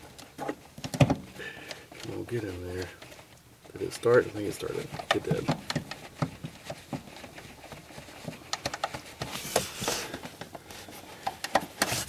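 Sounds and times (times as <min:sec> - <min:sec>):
brief scraping rub: 0:09.2 - 0:11.0, 0:11.7 - 0:12.0.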